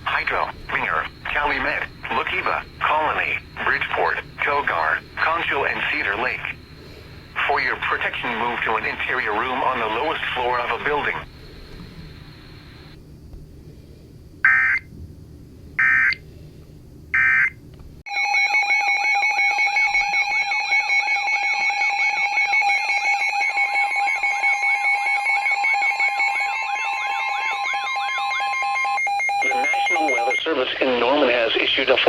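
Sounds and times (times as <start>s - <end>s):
digital data tone bursts: 0.1s - 13.0s, 21.3s - 32.0s.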